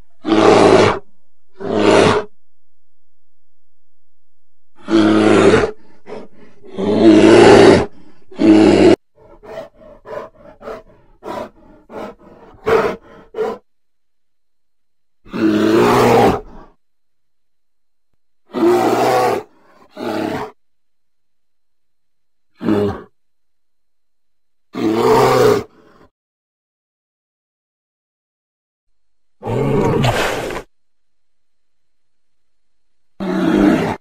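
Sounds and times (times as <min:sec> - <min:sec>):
bear roaring: 0:00.2 - 0:02.3, 0:04.8 - 0:13.7, 0:15.3 - 0:16.8, 0:18.5 - 0:20.6, 0:22.6 - 0:23.1, 0:24.7 - 0:26.1, 0:29.4 - 0:30.7, 0:33.2 - 0:34.0.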